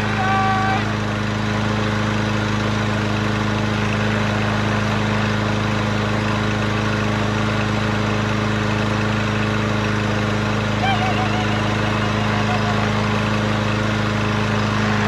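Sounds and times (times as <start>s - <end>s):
push mower engine running: 0.0s - 15.0s.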